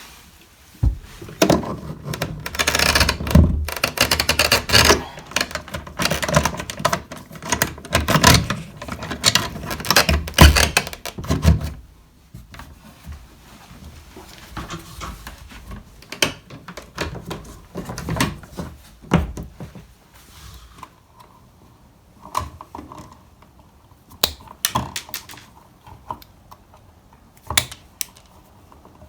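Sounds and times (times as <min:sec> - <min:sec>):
electrical box clicking and rattling: 0:01.3 - 0:11.7.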